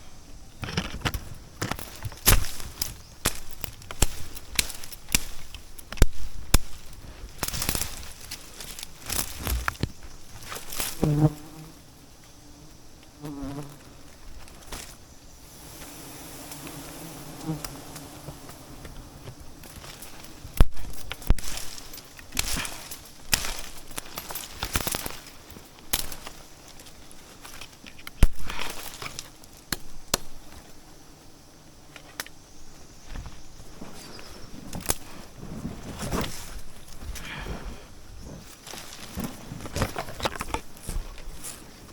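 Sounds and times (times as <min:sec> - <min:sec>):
sharp snaps and knocks: 0:00.6 - 0:11.1, 0:17.6 - 0:30.6, 0:31.9 - 0:32.4, 0:34.7 - 0:35.1
bees buzzing: 0:10.6 - 0:21.7.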